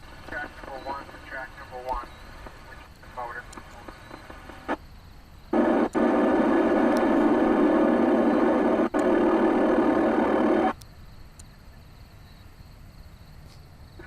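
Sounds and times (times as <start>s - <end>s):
buzzy radio tone: 0.0s - 4.8s, 5.5s - 10.8s
faint radio hiss: 0.0s - 10.8s.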